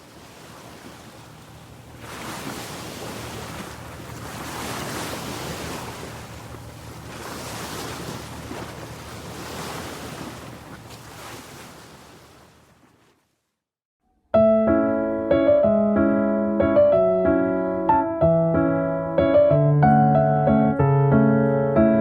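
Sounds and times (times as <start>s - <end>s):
ocean waves washing: 0.0s - 12.9s.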